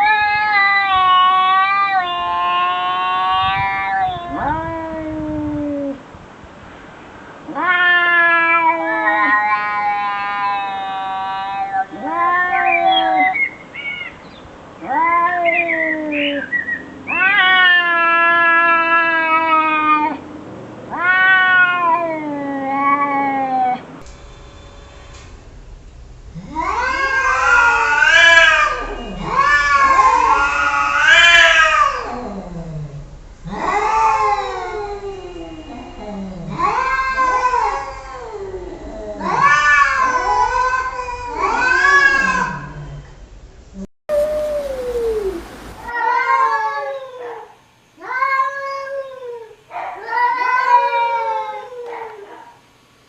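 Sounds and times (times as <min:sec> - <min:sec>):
cat meowing: 0:00.0 - 0:06.0, 0:07.5 - 0:13.4, 0:17.1 - 0:20.2, 0:20.9 - 0:23.8, 0:26.4 - 0:43.1, 0:48.0 - 0:52.4.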